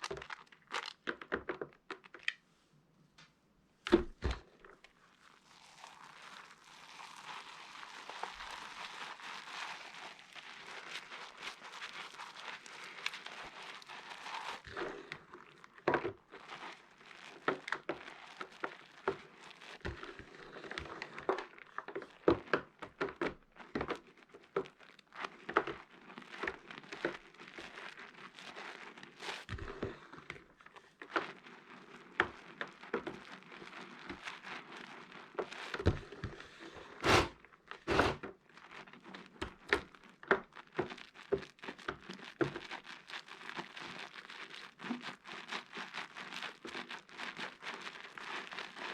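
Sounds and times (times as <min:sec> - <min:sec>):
soap crackling and clicking: 0:00.0 - 0:02.4.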